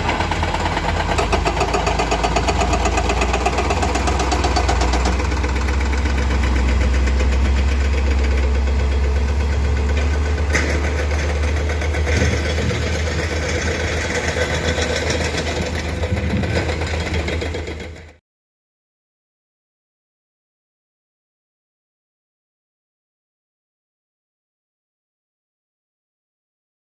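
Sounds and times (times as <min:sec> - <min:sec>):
construction machine engine running: 0:00.0 - 0:18.2.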